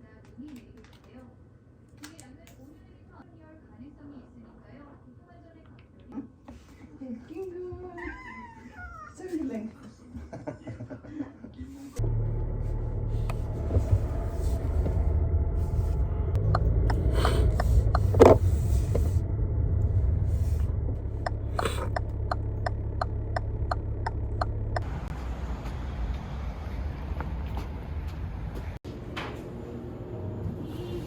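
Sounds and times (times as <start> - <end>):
regular ticking: 12.0 - 25.1
vehicle rumble inside moving car: 12.0 - 28.8.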